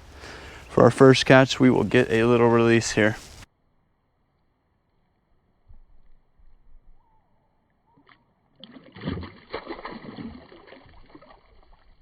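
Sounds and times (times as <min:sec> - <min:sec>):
water splashing and sloshing: 0:08.0 - 0:12.0.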